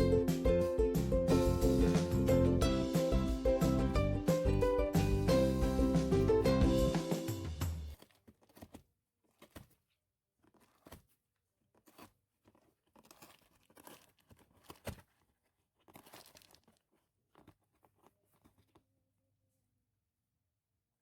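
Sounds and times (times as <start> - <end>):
cat chewing cardboard: 7.9 - 19.0.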